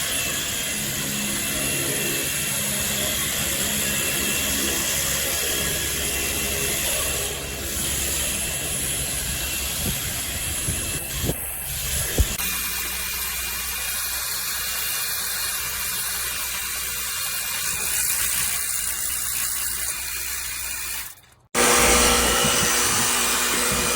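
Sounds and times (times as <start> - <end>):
pressure washer pump whirring: 0.0 - 23.9
water spray hissing: 7.7 - 23.9.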